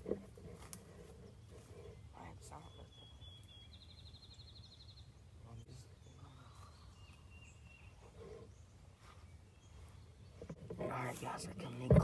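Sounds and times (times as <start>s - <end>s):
songbird trilling: 1.1s - 12.0s
thin whistled bird notes: 1.4s - 5.1s.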